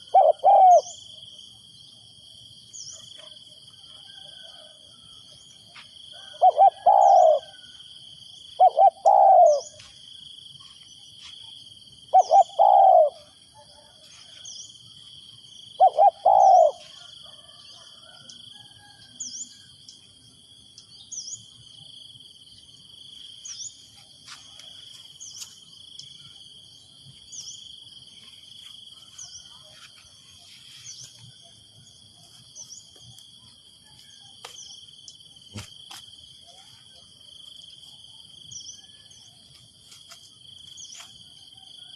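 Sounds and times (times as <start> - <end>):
dove cooing: 0.0 - 1.0, 6.1 - 7.7, 8.6 - 9.8, 12.1 - 14.0, 15.7 - 18.1
insect trilling: 15.8 - 17.0.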